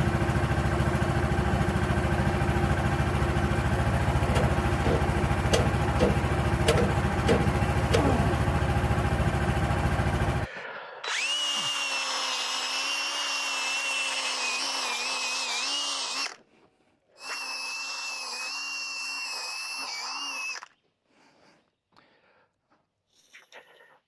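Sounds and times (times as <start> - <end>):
electric drill motor running: 2.2 - 16.4, 17.2 - 20.8.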